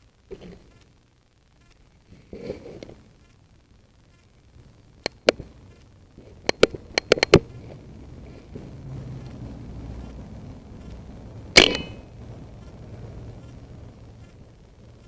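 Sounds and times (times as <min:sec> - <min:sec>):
soft rustle: 0:00.3 - 0:03.4, 0:04.0 - 0:09.5
short sharp clicks: 0:11.6 - 0:12.0.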